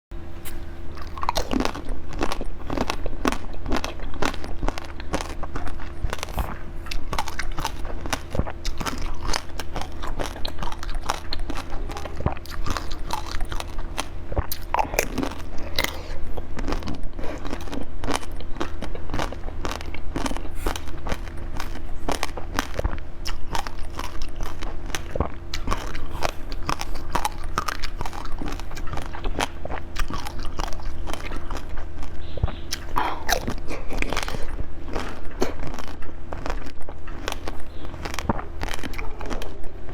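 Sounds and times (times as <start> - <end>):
low hum: 0.2 - 39.9
crunchy bites and chewing: 0.4 - 39.9.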